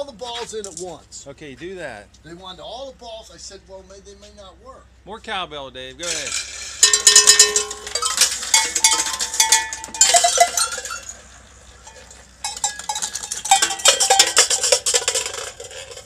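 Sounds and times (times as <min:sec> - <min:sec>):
ball bearings clanking on cowbells: 0:06.0 - 0:16.0.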